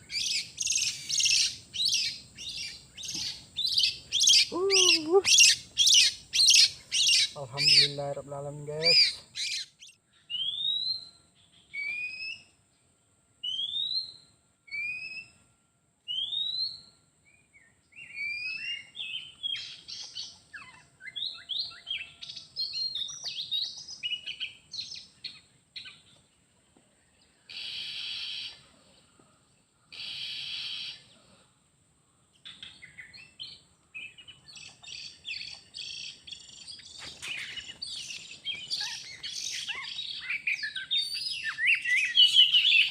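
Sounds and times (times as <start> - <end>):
harsh buzzy bird calls: 0.0 - 10.6, 27.5 - 28.6, 29.9 - 31.1, 34.1 - 42.9
bird singing whistles and chirps: 8.8 - 12.6, 13.4 - 15.4, 16.1 - 26.2, 32.5 - 42.9.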